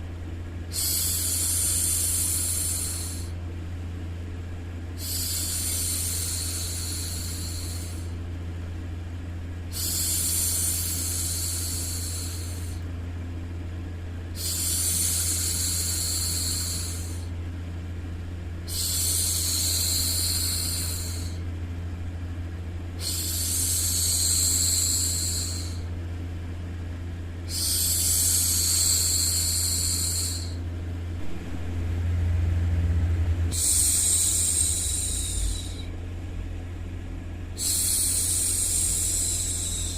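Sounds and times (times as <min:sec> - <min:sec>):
steady low hum: 0:00.0 - 0:39.9
woman shushing: 0:33.5 - 0:35.9.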